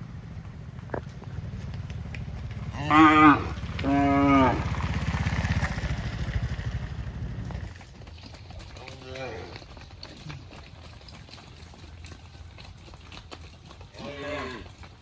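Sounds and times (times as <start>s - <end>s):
cow mooing: 2.7s - 4.7s, 14.0s - 14.8s.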